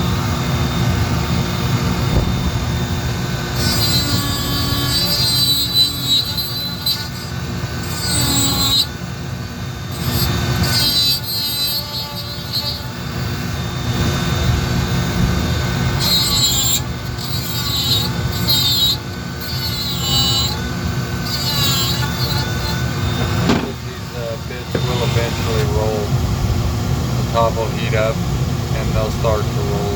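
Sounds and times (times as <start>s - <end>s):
rotary tool whining on wood: 0.0s - 26.2s.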